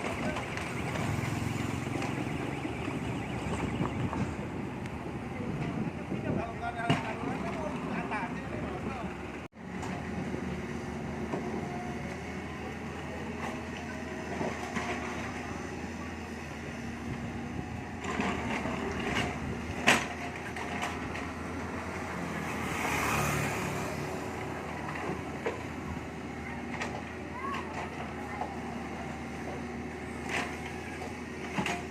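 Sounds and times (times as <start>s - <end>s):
engine running: 0.0s - 31.9s.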